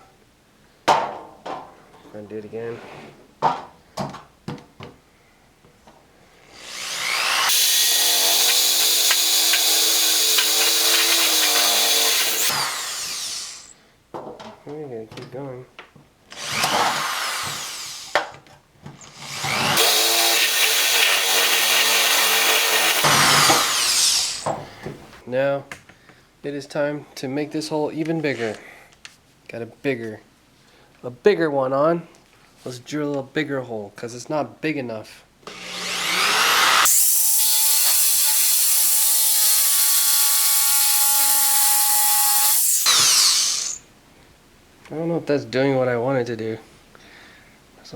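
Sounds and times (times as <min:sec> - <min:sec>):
power drill boring: 0:06.5 - 0:13.7, 0:16.3 - 0:18.2, 0:19.1 - 0:24.5, 0:35.5 - 0:43.8.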